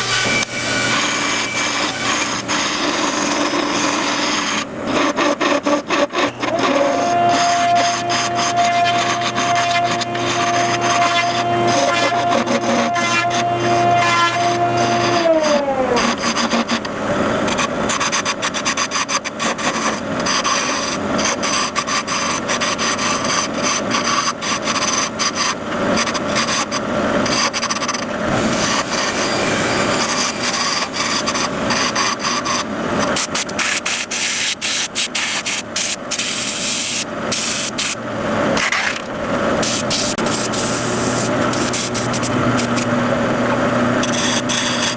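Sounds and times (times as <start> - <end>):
lathe tool rasping on wood: 0.0 - 16.9, 17.9 - 34.3.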